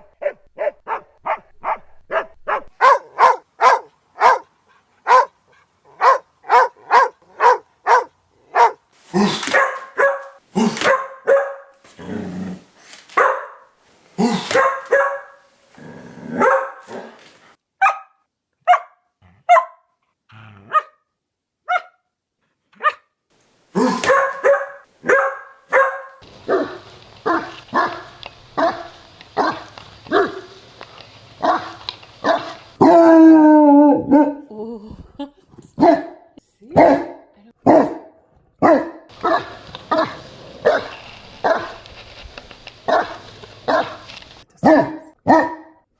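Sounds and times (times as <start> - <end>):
dog barking: 0.0 - 11.8, 13.1 - 15.5, 16.3 - 17.2, 17.8 - 19.9, 20.7 - 21.0, 21.6 - 22.0, 22.8 - 23.1, 23.8 - 30.6, 31.4 - 32.5, 35.8 - 41.7, 42.9 - 44.0, 44.6 - 45.8.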